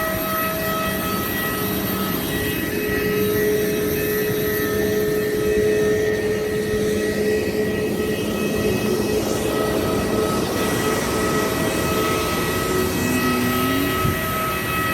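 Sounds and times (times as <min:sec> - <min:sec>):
airliner cabin jet engine rumble: 0:00.0 - 0:14.9.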